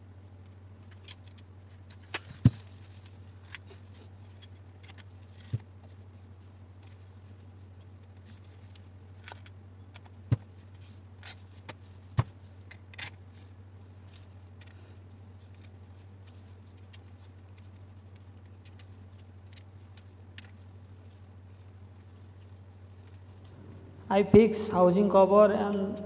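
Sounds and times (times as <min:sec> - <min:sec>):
steady low hum: 0:22.9 - 0:26.0.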